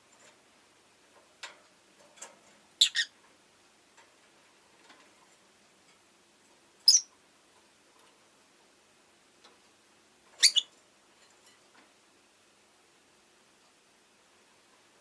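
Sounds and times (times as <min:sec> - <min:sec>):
lovebird chirping: 0:02.8 - 0:03.1, 0:06.8 - 0:07.1, 0:10.4 - 0:10.7.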